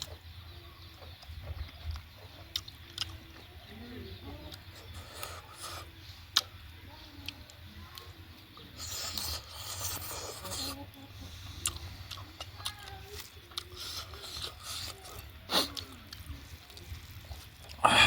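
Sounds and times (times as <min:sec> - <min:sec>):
chewing and wet mouth noises: 0:00.0 - 0:18.0.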